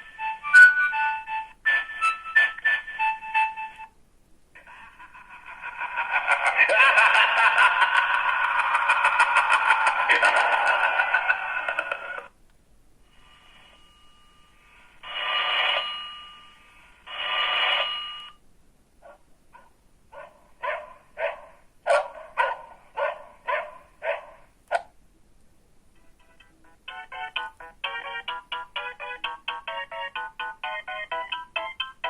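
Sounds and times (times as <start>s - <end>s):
mobile phone ringtone: 0.0s - 3.9s, 13.3s - 18.4s, 26.0s - 32.0s.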